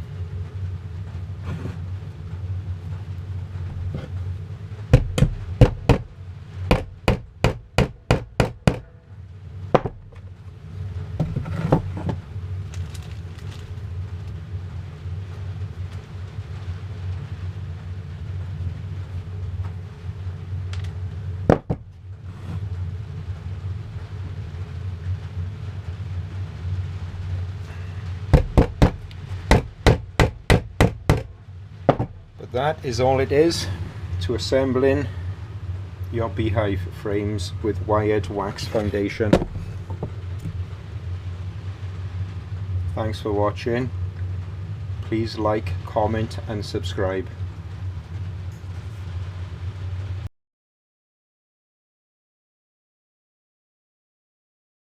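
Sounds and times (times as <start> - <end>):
hammer tapping nails into wood: 5.0 - 6.1, 6.7 - 8.9, 9.8 - 10.0, 21.5 - 21.8, 28.4 - 31.3, 31.9 - 32.2.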